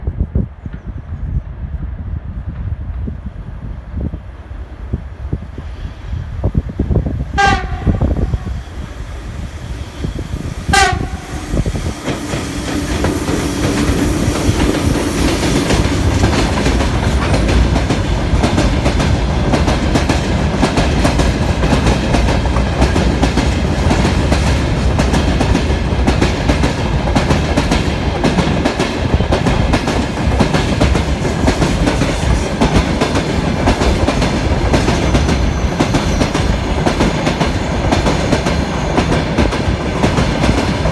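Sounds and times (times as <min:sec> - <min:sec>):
locomotive horn blasts: 0:07.4 - 0:08.4, 0:10.7 - 0:11.6
train wheels clattering over rails: 0:10.0 - 0:40.9.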